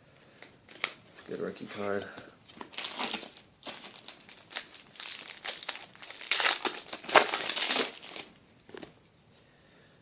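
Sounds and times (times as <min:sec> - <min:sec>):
plastic wrapper crinkling: 0:02.5 - 0:08.9.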